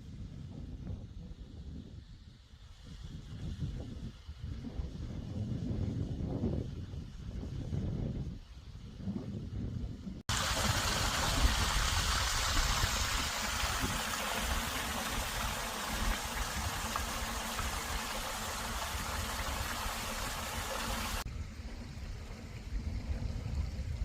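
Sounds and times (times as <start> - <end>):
wind buffeting microphone: 0.0 - 24.0
steady hiss: 10.3 - 21.2.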